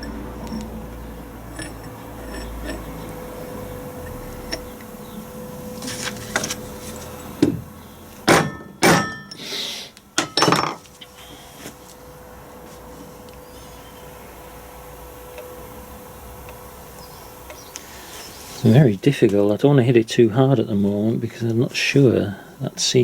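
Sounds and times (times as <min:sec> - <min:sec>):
hammer striking steel drift: 0:08.3 - 0:09.4.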